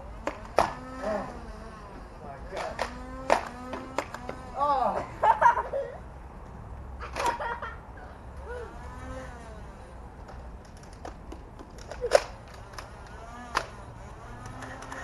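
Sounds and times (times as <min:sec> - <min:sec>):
toy blaster firing snap: 0:00.2 - 0:01.1, 0:02.5 - 0:04.4, 0:11.8 - 0:15.0
small clicks: 0:10.2 - 0:13.8, 0:14.4 - 0:15.0.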